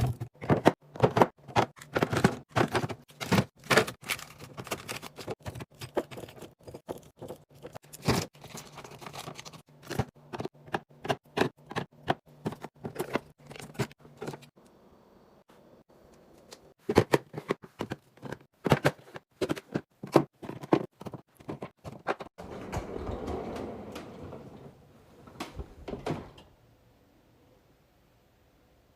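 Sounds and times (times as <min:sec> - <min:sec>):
packages clicking and knocking: 0:00.0 - 0:14.6, 0:16.8 - 0:22.4.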